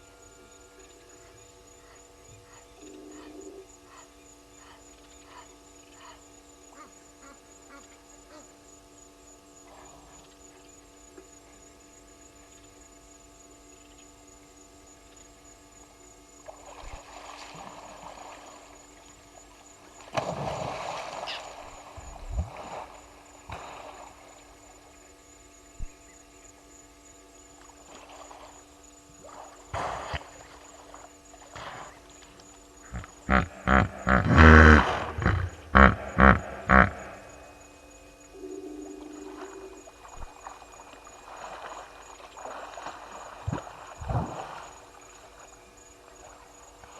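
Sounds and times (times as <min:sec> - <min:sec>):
hippo splashing in water: 0:20.0 - 0:24.3, 0:40.3 - 0:45.4.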